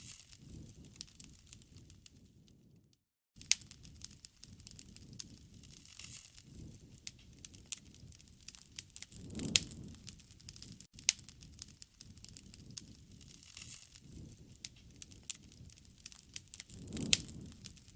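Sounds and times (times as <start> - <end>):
low rush of flame: 0.0 - 2.8, 3.4 - 17.9
wood fire crackling and popping: 0.0 - 17.9.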